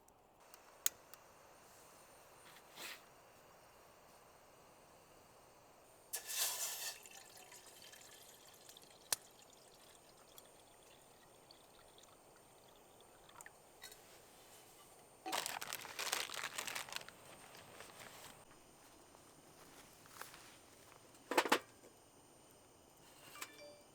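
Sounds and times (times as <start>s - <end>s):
liquid being poured: 6.2s - 13.6s.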